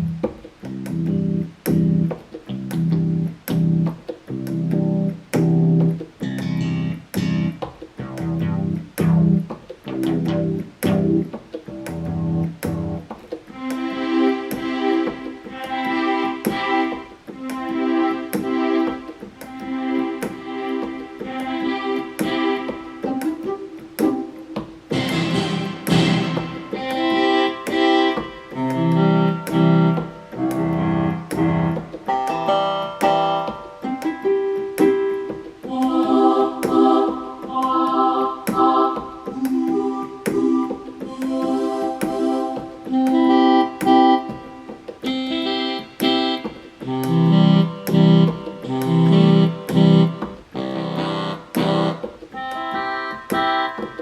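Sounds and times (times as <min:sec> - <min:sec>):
keyboard short notes and chords: 0:00.0 - 0:54.0.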